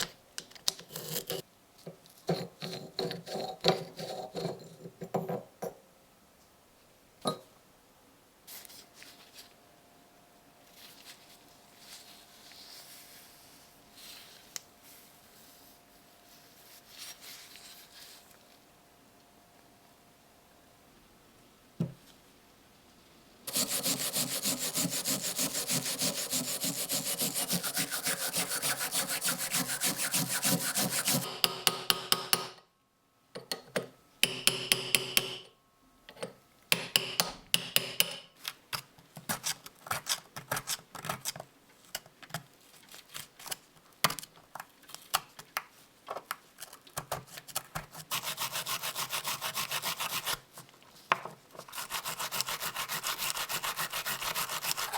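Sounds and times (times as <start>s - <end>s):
hand tool scraping metal: 23.5s - 31.7s.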